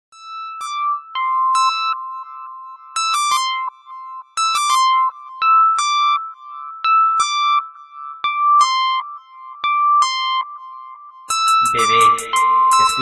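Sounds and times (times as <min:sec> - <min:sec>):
electronic keyboard melody: 0:00.2 - 0:13.0.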